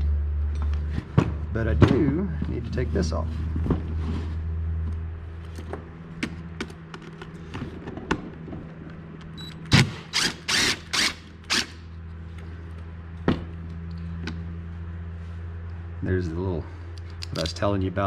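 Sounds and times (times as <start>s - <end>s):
steady low hum: 0.0s - 18.0s
metal parts clicking and tapping: 17.0s - 17.6s.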